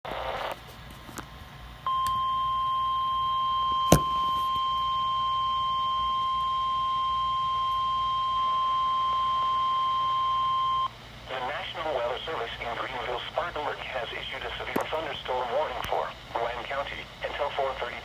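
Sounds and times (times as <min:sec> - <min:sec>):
steady alarm beep: 0:01.9 - 0:10.9.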